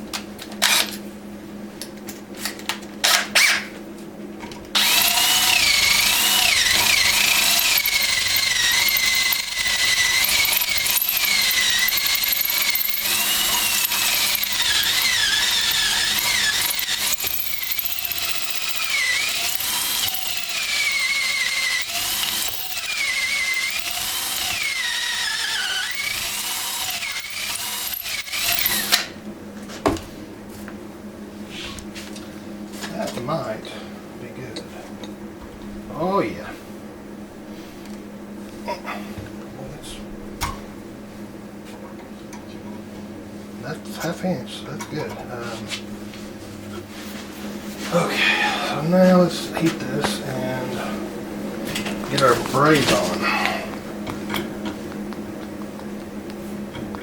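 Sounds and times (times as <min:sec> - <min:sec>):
power tool motor whine: 0:04.7 - 0:29.2.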